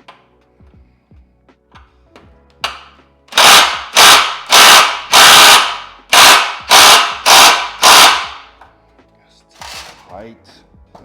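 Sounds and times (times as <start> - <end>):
impact wrench bursts: 2.7 - 8.6.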